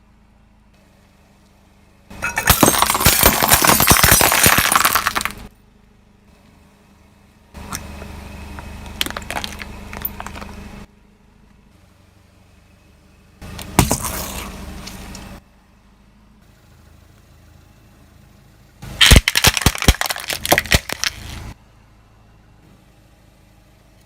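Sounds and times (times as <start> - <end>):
low steady engine: 0.0 - 24.0
material crunching and cracking: 19.0 - 21.4.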